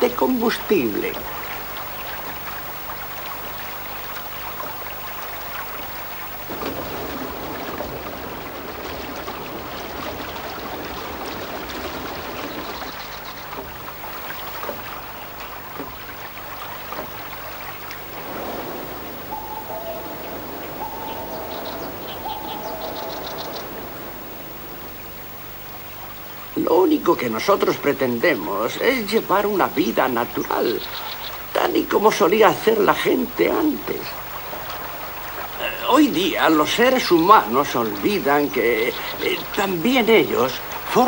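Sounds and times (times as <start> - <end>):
stream water running: 0.0 - 41.0
bird calling in two notes: 18.4 - 25.3.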